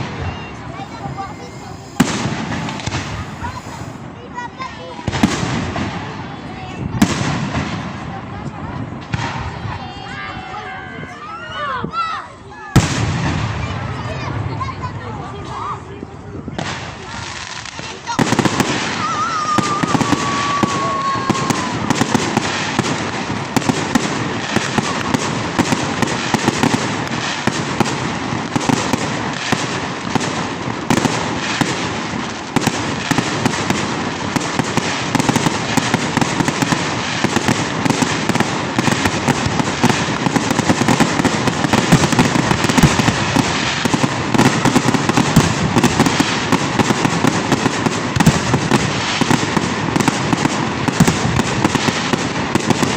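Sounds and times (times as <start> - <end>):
fireworks bangs and crackles: 0.0 - 52.9
firework whistle falling in pitch: 0.1 - 4.0.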